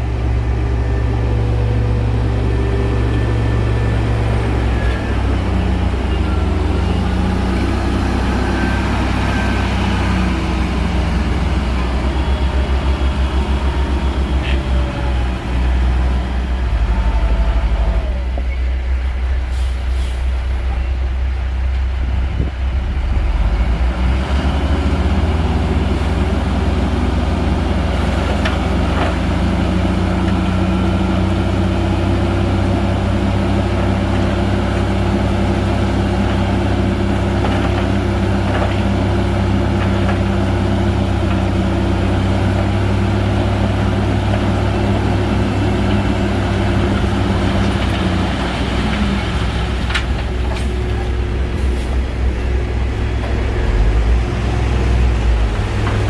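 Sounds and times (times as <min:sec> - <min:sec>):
bulldozer diesel engine: 0:00.0 - 0:56.0.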